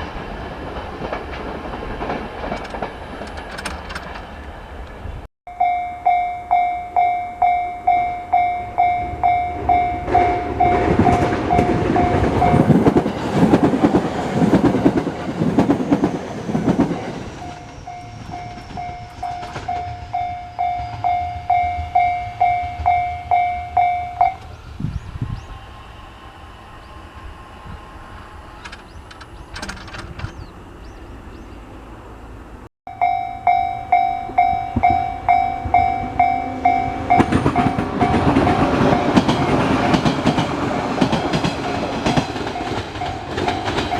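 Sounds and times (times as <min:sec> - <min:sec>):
train wheels clattering over rail joints: 0:00.0 - 0:05.0, 0:10.1 - 0:20.0, 0:28.6 - 0:30.5, 0:35.8 - 0:43.9
level crossing warning bell: 0:05.5 - 0:13.0, 0:17.4 - 0:24.5, 0:32.9 - 0:40.5, 0:41.3 - 0:43.9.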